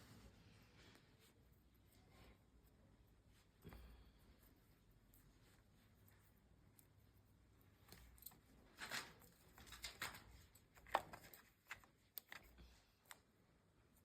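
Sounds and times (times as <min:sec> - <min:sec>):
rustles of handling parts: 0:00.0 - 0:14.0
small clicks of parts: 0:07.8 - 0:13.4.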